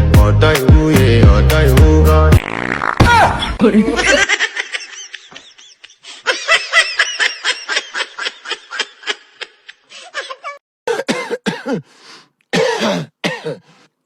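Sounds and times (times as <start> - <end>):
person laughing high-pitched: 3.1 - 10.6.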